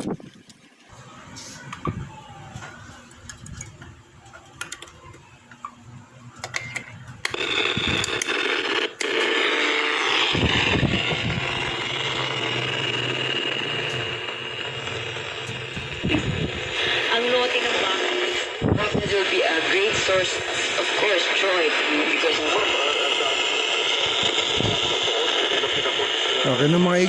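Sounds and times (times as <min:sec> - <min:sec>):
radio static hiss: 0:07.3 - 0:27.0.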